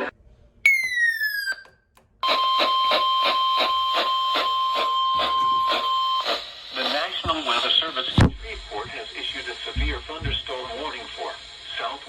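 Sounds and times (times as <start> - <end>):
electronic tone gliding downward: 0.7 - 1.7
weather radio alarm tone: 0.7 - 8.6.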